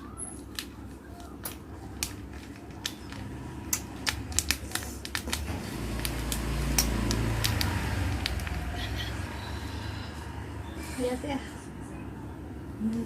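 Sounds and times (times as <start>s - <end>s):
sharp clicks and taps: 1.4s - 8.7s.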